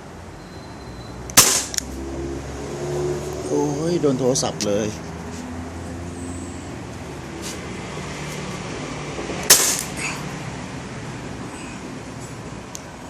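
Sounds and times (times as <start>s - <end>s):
sharp crack: 1.3s - 2.0s, 9.4s - 10.1s.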